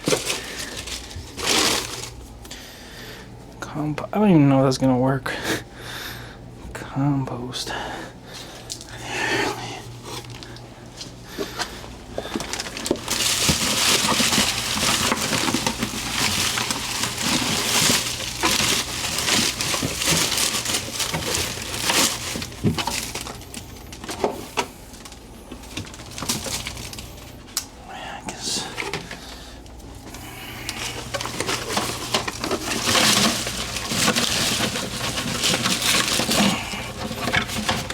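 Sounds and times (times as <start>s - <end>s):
dry garden debris crunching: 0.0s - 5.5s, 6.8s - 37.9s
clicks and rustles: 10.2s - 27.7s, 28.3s - 37.9s.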